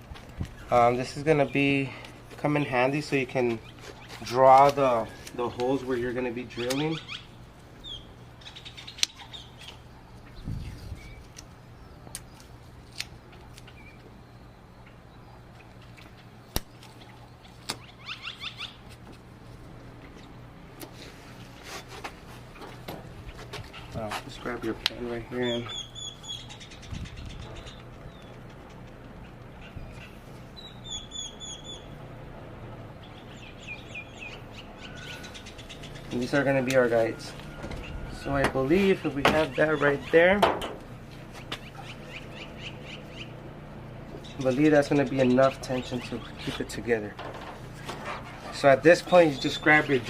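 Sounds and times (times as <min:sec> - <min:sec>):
birds chirping: 0:00.0 - 0:50.0
steady low hum: 0:00.0 - 0:50.0
masking tape pulled and torn: 0:12.1 - 0:13.7.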